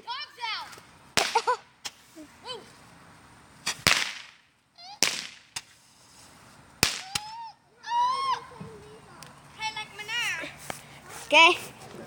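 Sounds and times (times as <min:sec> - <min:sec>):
fireworks cracking: 0:00.6 - 0:02.2, 0:03.6 - 0:06.0, 0:06.7 - 0:07.4
child squealing: 0:07.1 - 0:08.6.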